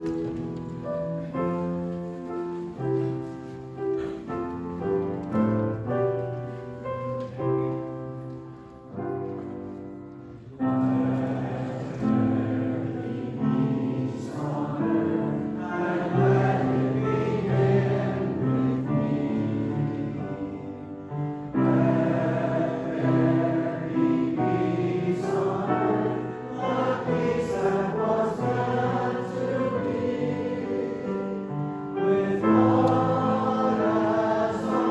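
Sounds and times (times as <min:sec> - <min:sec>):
choir singing: 0:10.3 - 0:34.9.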